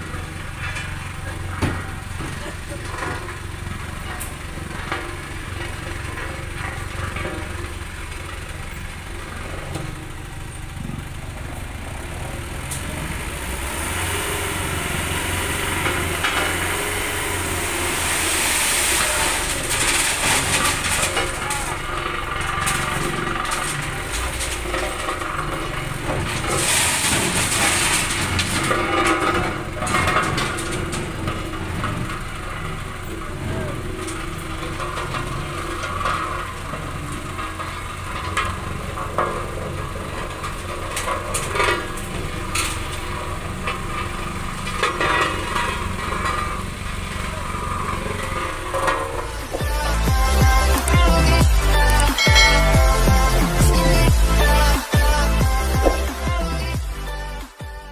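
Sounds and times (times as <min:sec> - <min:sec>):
loud hissing: 0:00.0 - 0:29.8
diesel truck engine rumbling: 0:00.0 - 0:57.9.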